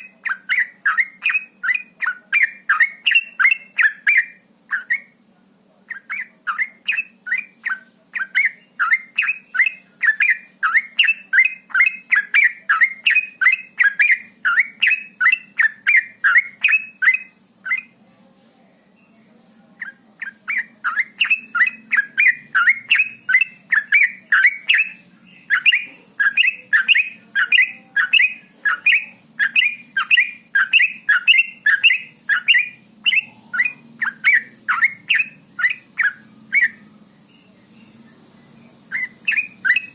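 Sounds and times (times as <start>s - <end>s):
bird chirping song: 0.0s - 5.3s, 5.9s - 39.9s
faint low hum: 0.0s - 39.9s.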